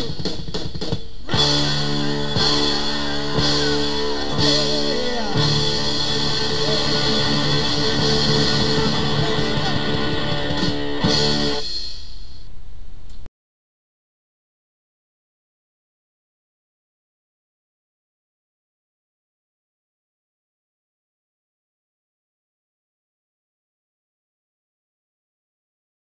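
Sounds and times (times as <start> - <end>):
rock music with electric guitar: 0.0 - 11.7
drum hits: 0.0 - 11.8
faint hiss: 10.8 - 13.3.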